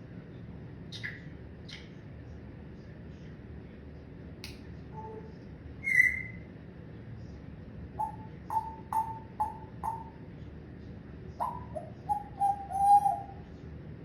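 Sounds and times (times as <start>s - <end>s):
parrot whistle call: 5.8s - 6.4s, 11.4s - 13.4s.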